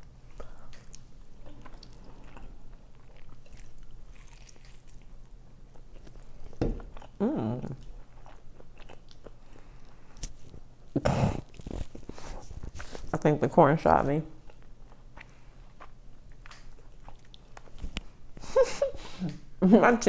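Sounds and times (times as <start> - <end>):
chewing and biting food: 0.0 - 10.6, 14.4 - 18.1.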